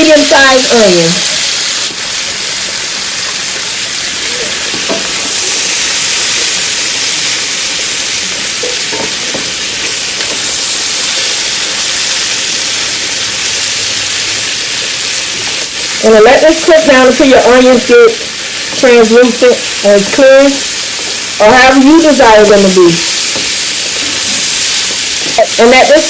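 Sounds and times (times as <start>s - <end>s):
vegetables sizzling in oil: 0.0s - 26.0s.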